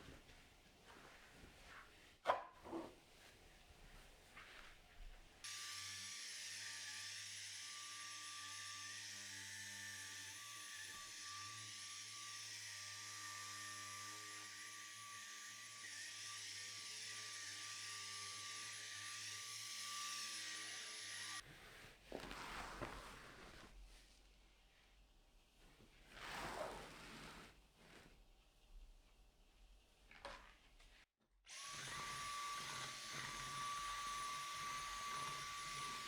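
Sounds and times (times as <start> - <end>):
vacuum cleaner running: 31.5 - 36.0.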